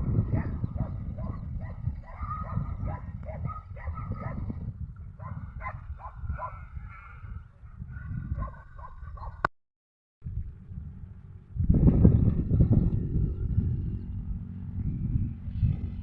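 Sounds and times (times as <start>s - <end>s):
wind rumble on microphone: 0.0s - 9.5s, 10.2s - 16.0s
dog barking and yipping: 0.3s - 4.5s, 5.2s - 6.7s, 8.4s - 9.4s.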